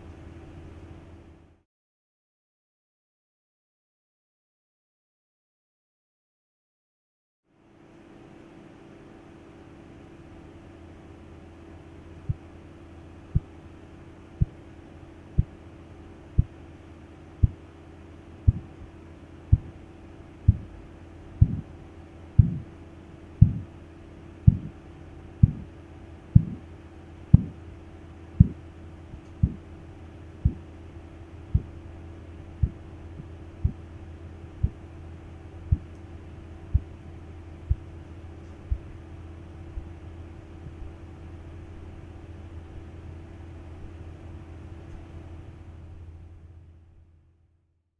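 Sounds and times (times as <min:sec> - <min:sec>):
steady low hum: 0:00.0 - 0:01.6, 0:07.6 - 0:47.5
heartbeat thudding taps: 0:12.3 - 0:12.5, 0:13.3 - 0:13.6, 0:14.4 - 0:14.6, 0:15.4 - 0:15.6, 0:16.4 - 0:16.6, 0:17.4 - 0:17.6, 0:18.5 - 0:19.8, 0:20.5 - 0:20.8, 0:21.4 - 0:21.7, 0:22.4 - 0:22.8, 0:23.4 - 0:23.8, 0:24.4 - 0:24.8, 0:25.4 - 0:25.7, 0:26.4 - 0:26.7, 0:27.3 - 0:27.6, 0:28.4 - 0:29.7, 0:30.4 - 0:30.7, 0:31.5 - 0:31.8, 0:32.6 - 0:33.8, 0:34.6 - 0:34.8, 0:35.7 - 0:36.0, 0:36.7 - 0:37.0, 0:37.7 - 0:37.9, 0:38.7 - 0:39.0, 0:39.7 - 0:40.0, 0:40.6 - 0:41.0.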